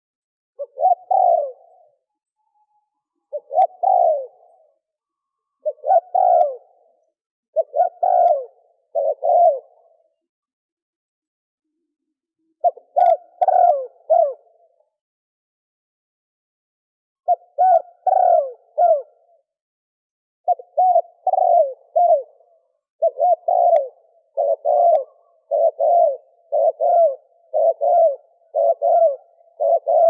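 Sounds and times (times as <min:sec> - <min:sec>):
dove cooing: 0:00.6 - 0:02.0, 0:03.2 - 0:04.9, 0:05.6 - 0:07.0, 0:07.6 - 0:10.2, 0:12.6 - 0:14.8, 0:17.2 - 0:19.5, 0:20.5 - 0:30.0.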